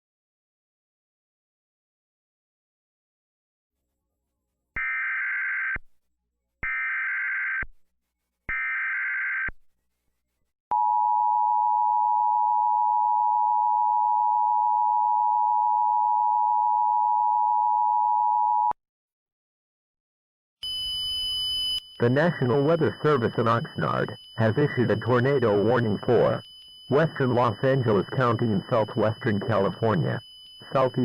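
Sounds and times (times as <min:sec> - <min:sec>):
two-tone attention signal: 0:20.6 - 0:31.0
warbling digital data tones: 0:20.7 - 0:31.0.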